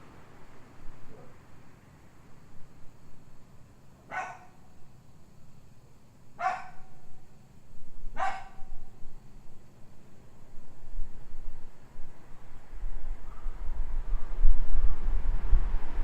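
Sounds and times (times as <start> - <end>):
dog barking: 4.1 - 4.6, 6.4 - 7.0, 8.2 - 8.8, 13.2 - 13.6
low wind rumble on microphone: 6.4 - 16.0.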